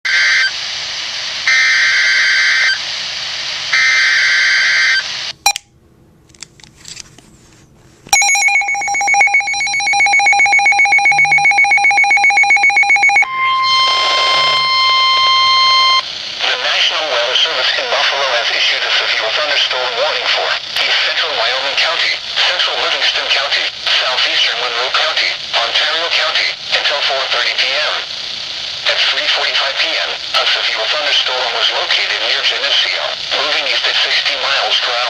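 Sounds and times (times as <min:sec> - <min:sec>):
two-tone attention signal: 0:08.1 - 0:16.0
steady alert tone: 0:08.2 - 0:16.0
shrill buzzing data tones: 0:08.2 - 0:16.1.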